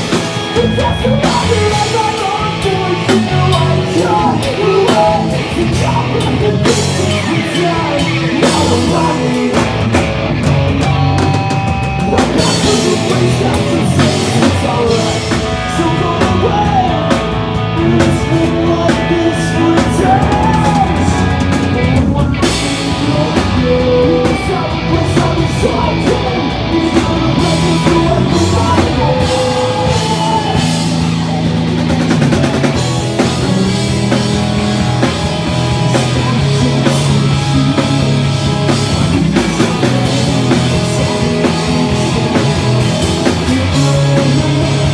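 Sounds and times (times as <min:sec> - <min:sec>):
distorted electric guitars: 0:00.0 - 0:44.9
drum kit: 0:00.0 - 0:44.9
person singing: 0:00.4 - 0:09.9, 0:12.0 - 0:32.0, 0:33.2 - 0:44.9.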